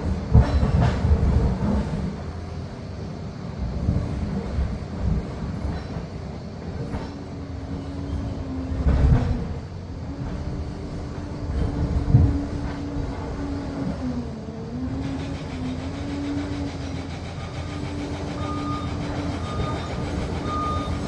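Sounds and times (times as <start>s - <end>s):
steel tracks clanking: 0.0s - 21.0s
diesel engine under load: 7.5s - 21.0s.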